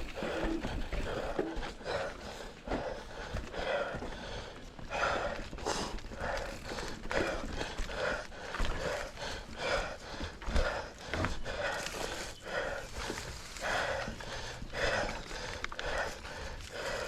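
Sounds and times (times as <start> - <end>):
person panting hard: 0.0 - 17.0.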